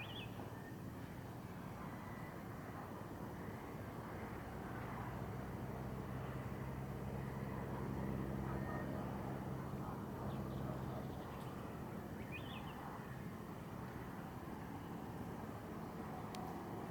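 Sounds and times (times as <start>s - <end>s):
outdoor background noise: 0.0s - 16.9s.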